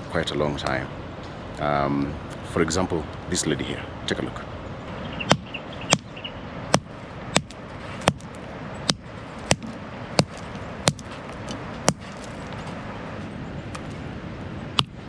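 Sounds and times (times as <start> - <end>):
hammer striking stone: 5.3 - 6.1, 6.7 - 8.3, 8.9 - 11.1, 11.8 - 12.3, 14.8 - 15.0.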